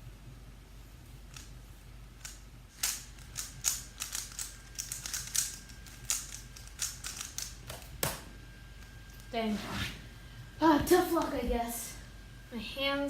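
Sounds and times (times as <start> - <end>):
puzzle cube plastic clicks: 2.2 - 7.9.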